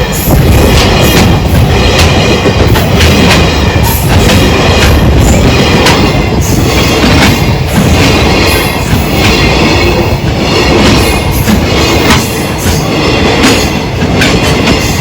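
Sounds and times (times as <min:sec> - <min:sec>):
freight train wagons rolling: 0:00.0 - 0:15.0
wheel clacks over rail joints: 0:00.0 - 0:15.0.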